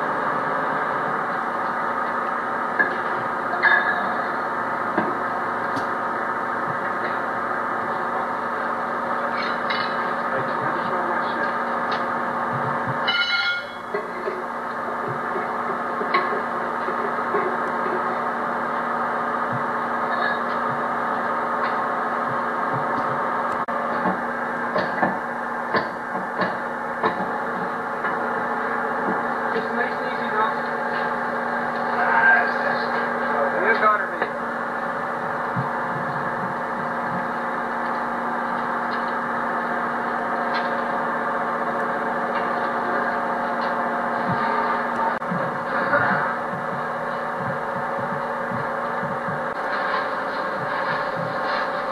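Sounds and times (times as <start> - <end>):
engine droning: 0.0 - 51.9
workshop hum: 0.0 - 51.9.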